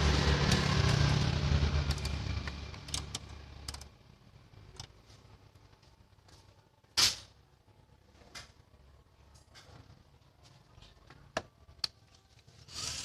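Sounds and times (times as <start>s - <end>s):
diesel engine running: 0.0s - 4.1s.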